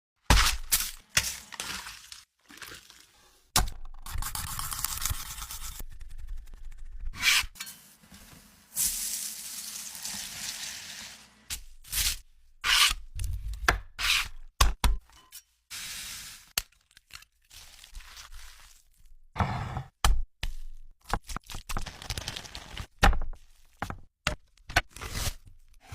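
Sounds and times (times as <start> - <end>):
food frying in a pan: 8.7 - 11.3
kitchen knocks and scrapes: 19.4 - 19.9.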